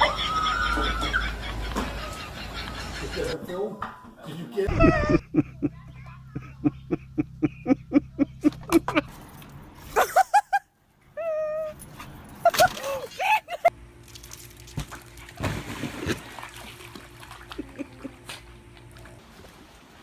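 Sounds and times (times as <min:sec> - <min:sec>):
low steady hum: 0:04.7 - 0:20.0.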